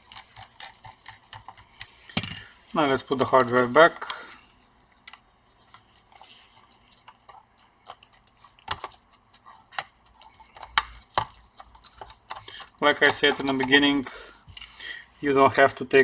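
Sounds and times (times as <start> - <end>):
plastic and metal parts clicking: 9.7 - 13.8.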